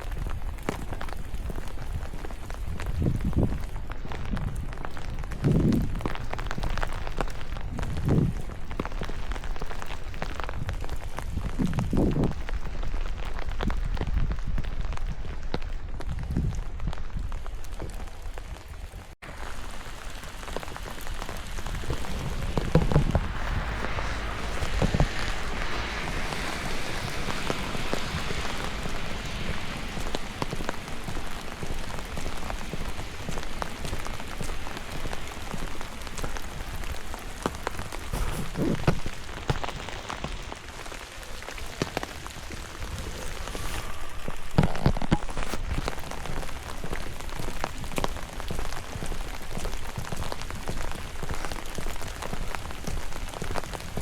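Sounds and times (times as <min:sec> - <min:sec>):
steady rain: 0:00.0 - 0:54.0
raindrops ticking: 0:16.8 - 0:54.0.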